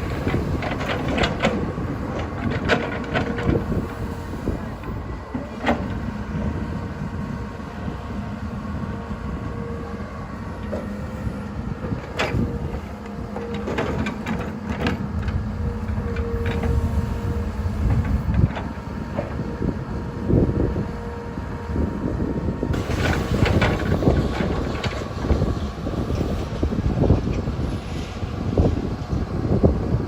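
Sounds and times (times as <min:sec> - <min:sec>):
sharp knocks of excavator digging: 0:00.0 - 0:04.6, 0:11.9 - 0:17.0
excavator diesel engine running: 0:00.0 - 0:30.0.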